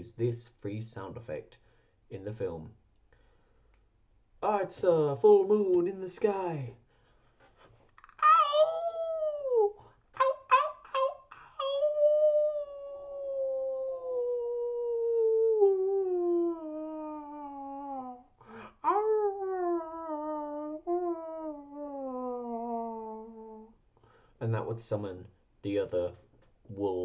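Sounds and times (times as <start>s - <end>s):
man imitating wolf howls: 8.2s - 23.8s.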